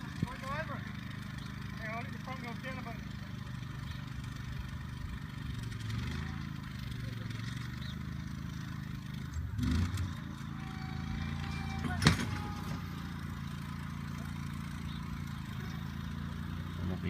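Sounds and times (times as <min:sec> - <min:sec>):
boat engine running: 0:00.0 - 0:17.0
clunk and rattle: 0:11.3 - 0:13.0.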